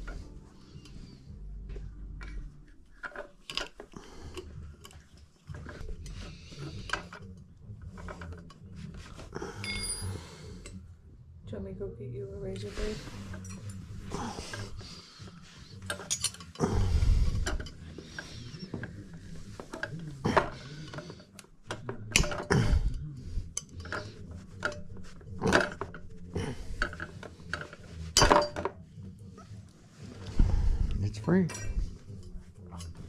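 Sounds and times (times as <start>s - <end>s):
metal tools clinking and scraping: 2.9s - 10.8s, 13.2s - 22.5s, 23.4s - 28.8s, 31.4s - 33.0s.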